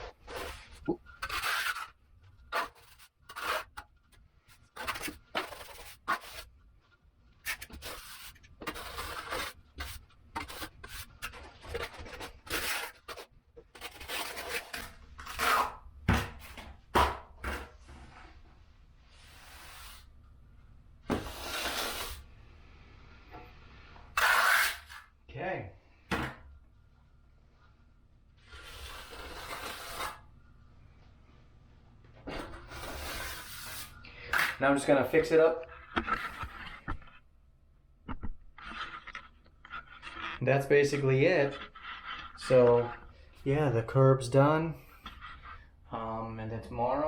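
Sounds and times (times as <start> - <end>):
trowels scraping wet mortar: 0.0 - 3.8, 4.7 - 6.5, 7.4 - 15.8, 21.1 - 22.2, 24.1 - 25.1, 28.4 - 30.2, 32.6 - 35.3.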